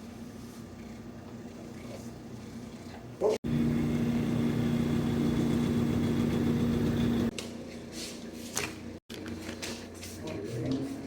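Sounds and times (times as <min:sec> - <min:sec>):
electric motor humming: 0:03.4 - 0:07.3.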